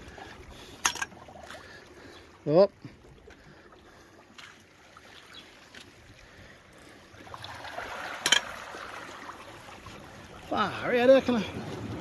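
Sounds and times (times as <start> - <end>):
sea water washing against rocks: 7.2 - 12.0.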